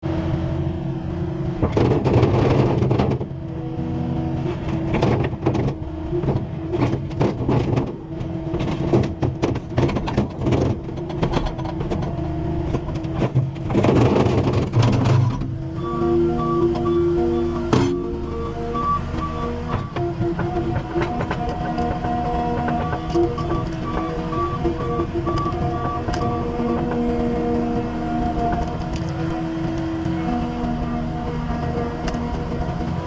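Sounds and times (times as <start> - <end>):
diesel engine revving under load: 0.4 - 33.0.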